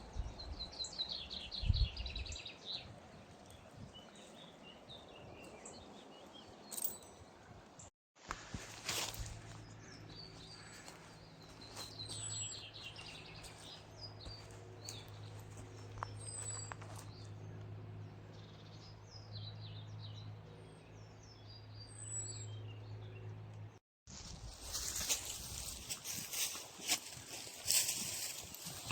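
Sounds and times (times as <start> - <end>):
songbirds trilling and chirping: 0.0 - 7.9, 8.5 - 23.8, 24.7 - 28.9.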